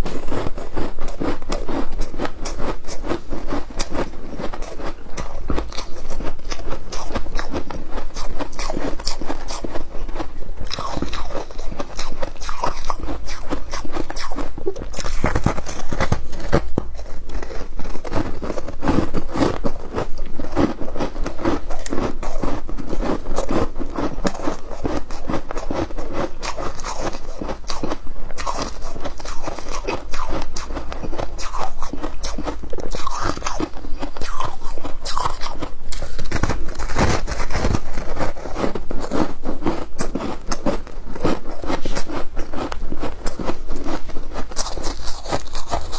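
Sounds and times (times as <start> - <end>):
person chewing ice: 0.0 - 45.9.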